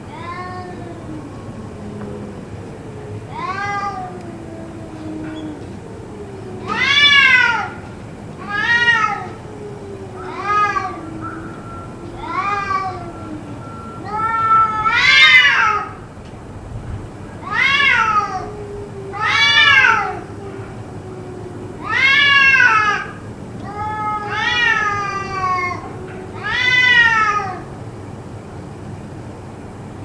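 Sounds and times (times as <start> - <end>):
low drawn-out cat moan: 0.0 - 16.1, 17.3 - 27.8
cats yowling: 0.0 - 16.2, 17.2 - 28.0.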